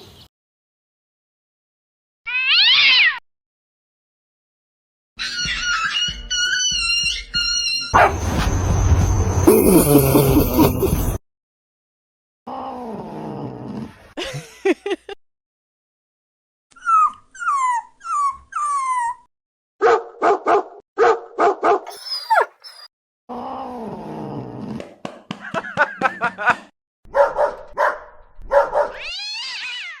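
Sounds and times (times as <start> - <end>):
dog yipping and barking: 7.9 - 8.2, 20.3 - 22.9, 27.2 - 29.0
dog whining: 21.9 - 22.9.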